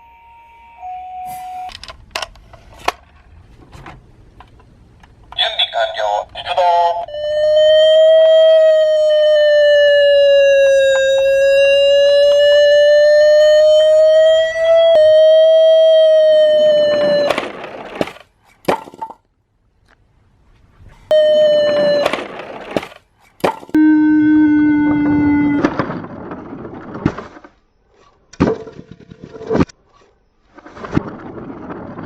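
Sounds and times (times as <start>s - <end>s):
toy siren beeping: 0.0s - 1.7s, 6.8s - 17.5s, 21.1s - 22.2s, 23.8s - 25.7s.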